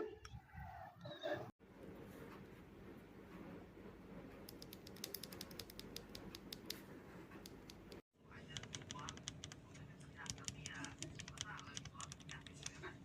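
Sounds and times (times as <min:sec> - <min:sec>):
mechanical keyboard typing: 0:04.5 - 0:06.8, 0:08.5 - 0:13.0.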